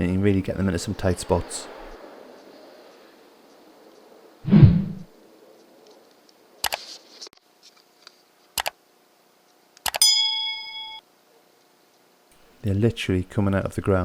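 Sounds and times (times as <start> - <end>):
sharp metallic clicks: 9.8 - 10.0
bright metallic ring: 10.0 - 11.0.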